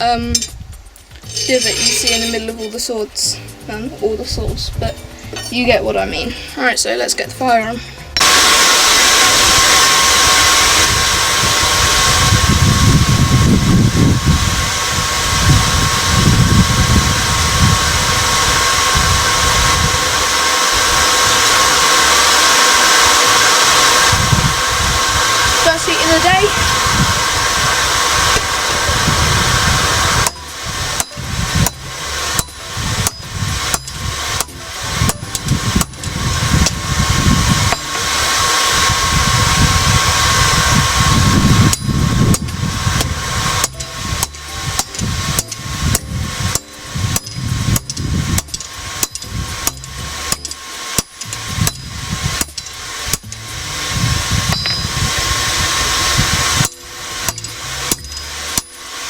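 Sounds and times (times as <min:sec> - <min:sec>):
hammer striking steel on anvil: 0:01.2 - 0:02.9, 0:04.9 - 0:05.7, 0:30.2 - 0:36.8, 0:37.7 - 0:38.1, 0:41.7 - 0:53.4, 0:54.5 - 0:55.1, 0:56.6 - 0:59.0
forge blower running: 0:03.4 - 0:59.0.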